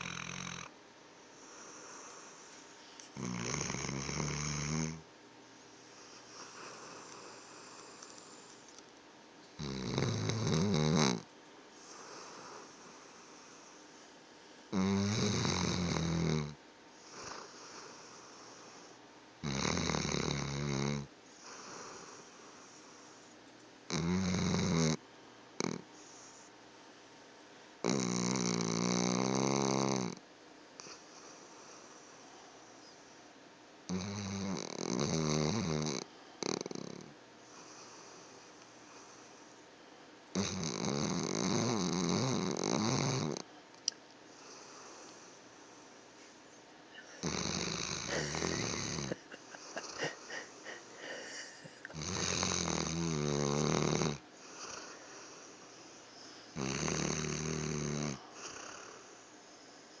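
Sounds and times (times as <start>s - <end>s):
dog snoring loudly: 0.0s - 0.7s, 1.4s - 2.5s, 3.2s - 5.1s, 6.0s - 8.5s, 9.6s - 13.8s, 14.7s - 22.8s, 23.9s - 25.0s, 25.6s - 26.5s, 27.8s - 30.2s, 33.9s - 39.3s, 40.3s - 43.5s, 47.2s - 55.6s, 56.5s - 59.2s
dog breathing: 11.8s - 14.0s, 47.0s - 53.4s, 54.2s - 57.0s.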